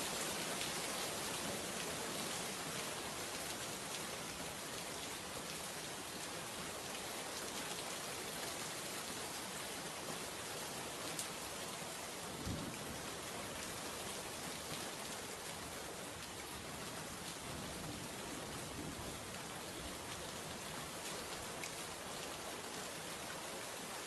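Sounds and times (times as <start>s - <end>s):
steady rain hiss: 0.0s - 24.0s.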